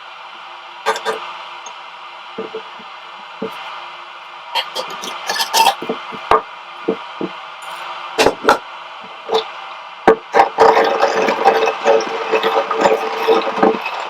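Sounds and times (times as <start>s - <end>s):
steady hum with rattling: 0.0s - 14.0s
wooden knocks and clatter: 10.1s - 13.9s.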